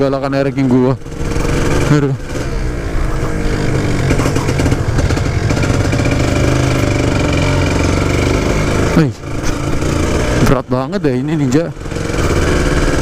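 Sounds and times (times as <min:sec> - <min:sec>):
two-stroke motorcycle engine: 0:00.0 - 0:13.0.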